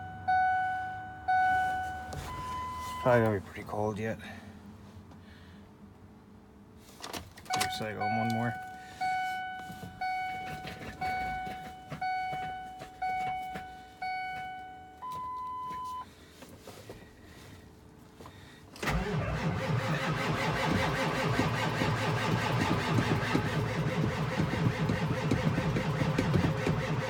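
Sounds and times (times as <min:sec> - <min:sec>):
dashboard warning chimes: 0:00.0 - 0:03.6, 0:07.4 - 0:16.1
diesel engine cranking and running: 0:07.3 - 0:14.8, 0:18.6 - 0:27.0.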